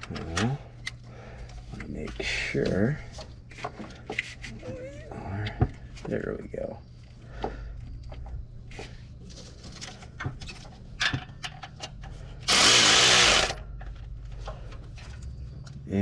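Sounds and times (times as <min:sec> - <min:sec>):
clicks and knocks of tools: 0:09.7 - 0:12.2
power tool tightening a bolt: 0:12.5 - 0:13.6.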